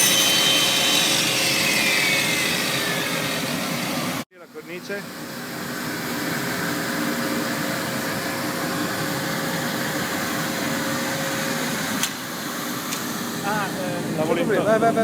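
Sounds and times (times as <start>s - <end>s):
cnc router machining: 0.0s - 15.0s
sharp click: 12.0s - 12.2s.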